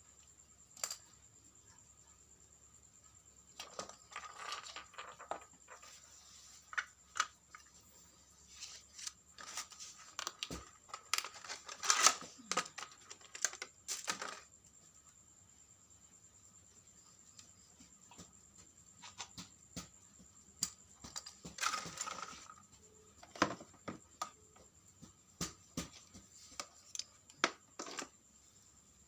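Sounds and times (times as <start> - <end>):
hands rustling small parts: 3.6 - 14.5.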